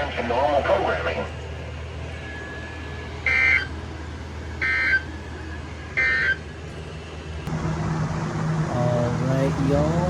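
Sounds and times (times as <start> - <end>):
steady low hum: 0.0 - 10.0
two-tone warbling data bursts: 3.2 - 3.7.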